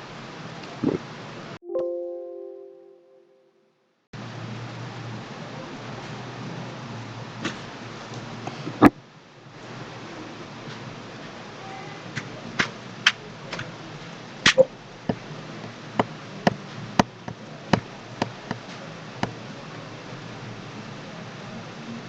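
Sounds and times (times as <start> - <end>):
sharp clicks: 14.5 - 14.7.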